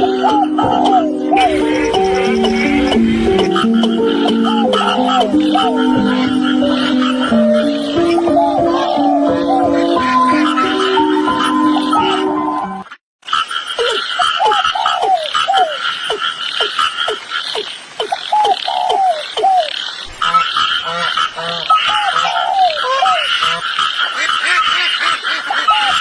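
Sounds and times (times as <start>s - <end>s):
low rhythmic pulsing: 0.0s - 10.3s
frogs calling: 0.0s - 26.0s
high-pitched frog chorus: 0.2s - 12.3s, 13.3s - 26.0s.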